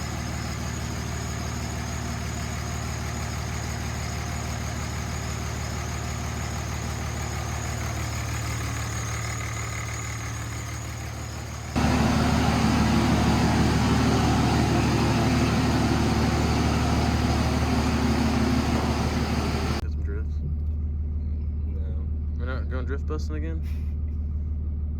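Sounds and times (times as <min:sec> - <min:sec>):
diesel truck engine idling: 0:00.0 - 0:19.8.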